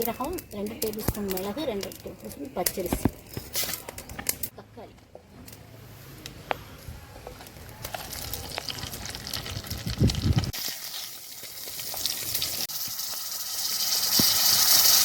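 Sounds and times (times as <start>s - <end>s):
food sizzling in oil: 7.8s - 15.0s.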